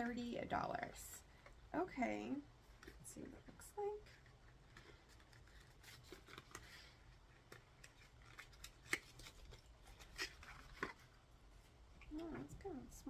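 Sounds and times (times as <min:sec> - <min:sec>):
packaging rustling: 0:04.0 - 0:11.8.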